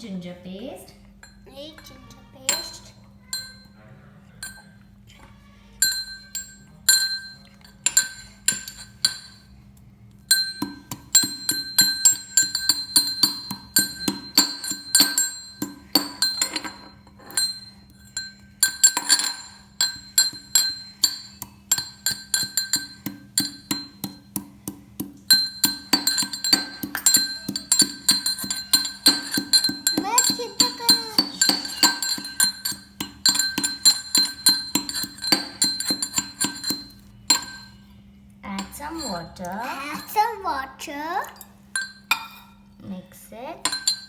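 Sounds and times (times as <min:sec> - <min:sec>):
pestle pounding in a mortar: 0:10.3 - 0:37.8.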